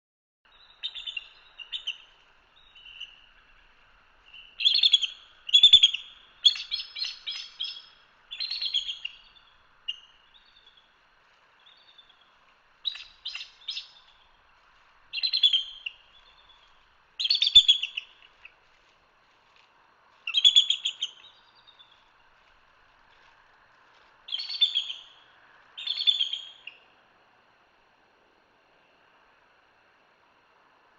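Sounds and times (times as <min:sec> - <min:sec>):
faint background hiss: 0:00.5 - 0:30.9
eagle squeaky calls: 0:04.3 - 0:10.8, 0:12.8 - 0:14.1, 0:15.2 - 0:18.6, 0:20.3 - 0:21.4, 0:24.3 - 0:25.2, 0:25.8 - 0:26.8.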